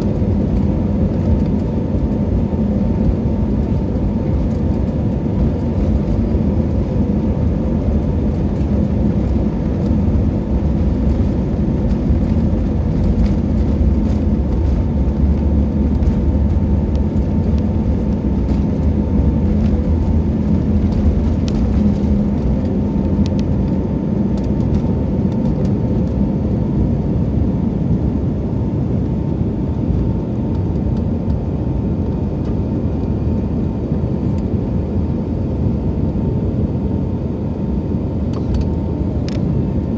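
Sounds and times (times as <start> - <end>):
jet engine and airflow rumble: 0.0 - 39.9.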